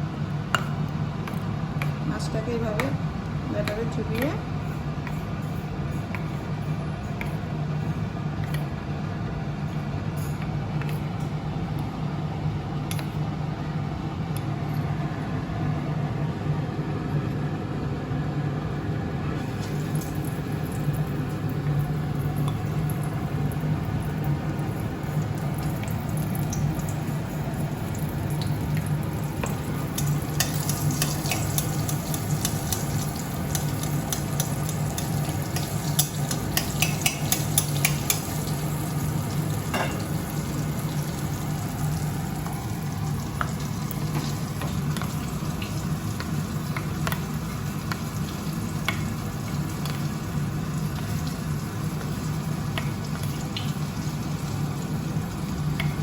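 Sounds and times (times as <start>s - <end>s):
fish frying in hot oil: 19.4s - 56.0s.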